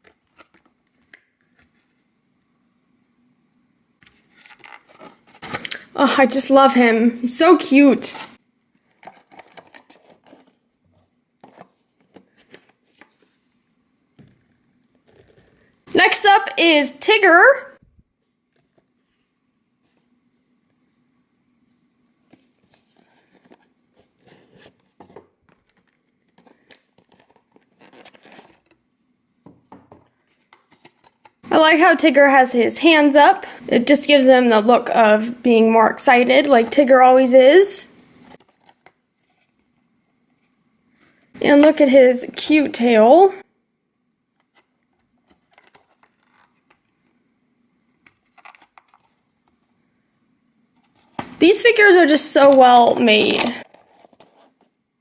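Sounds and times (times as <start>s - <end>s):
packaging rustling and crinkling: 0.0s - 2.1s, 4.0s - 5.8s, 8.1s - 13.7s, 22.3s - 28.8s, 30.0s - 31.4s, 38.1s - 39.7s, 44.4s - 47.1s, 48.0s - 49.7s, 53.2s - 54.8s.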